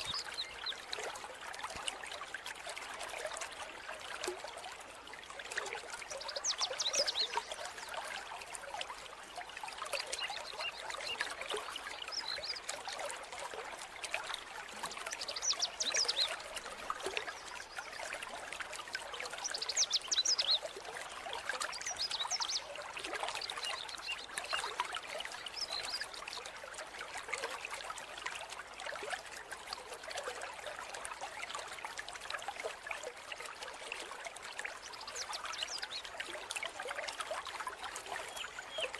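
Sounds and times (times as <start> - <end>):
stream water trickling: 0.0 - 38.9.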